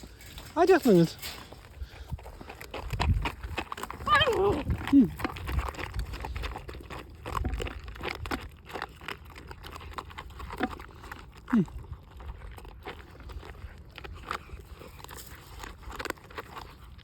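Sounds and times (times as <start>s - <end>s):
animals crunching and chewing food: 0.0s - 17.0s
animal whimpers: 4.0s - 5.2s.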